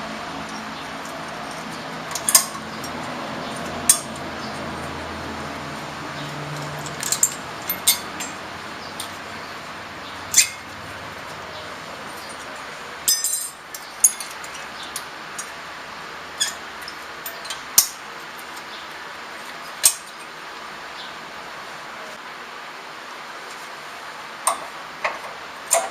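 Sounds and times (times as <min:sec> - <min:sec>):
ringing metal clatter: 0:01.4 - 0:05.1, 0:06.2 - 0:09.2, 0:10.3 - 0:10.8, 0:11.5 - 0:15.6, 0:16.4 - 0:18.8
metallic clinks of tools: 0:01.5 - 0:05.0, 0:06.2 - 0:09.2, 0:10.3 - 0:10.8, 0:12.1 - 0:15.6, 0:16.4 - 0:18.7.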